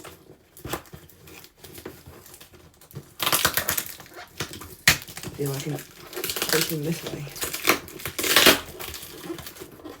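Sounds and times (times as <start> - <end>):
toy packaging crinkling: 3.2 - 9.8.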